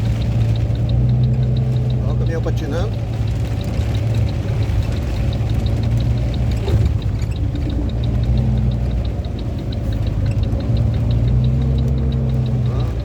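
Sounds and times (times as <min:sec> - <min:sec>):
car engine humming: 0:00.0 - 0:13.0
faint even ticking: 0:00.0 - 0:13.0.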